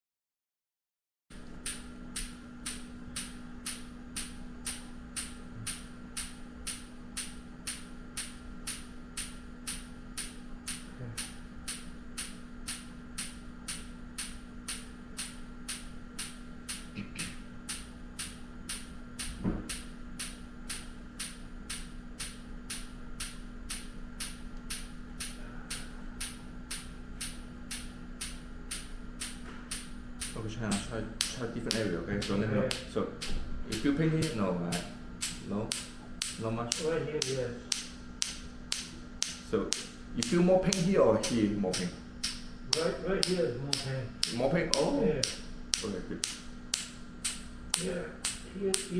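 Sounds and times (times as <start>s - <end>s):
low hum: 1.3s - 48.9s
therapy device clicking: 1.3s - 48.9s
loud knock: 19.3s - 19.7s.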